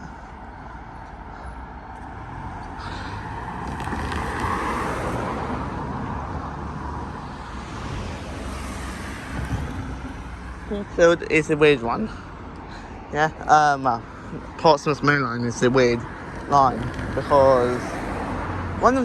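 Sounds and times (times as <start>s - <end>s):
vehicle passing by: 1.4s - 12.2s, 15.6s - 19.0s.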